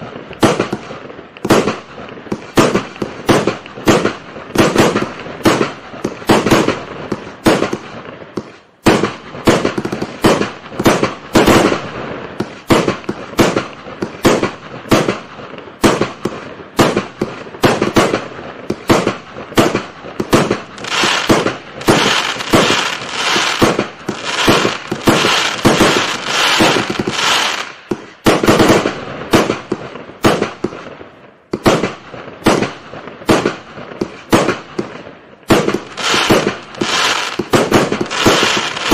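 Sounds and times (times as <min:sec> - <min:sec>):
fireworks bangs: 0:00.0 - 0:38.9.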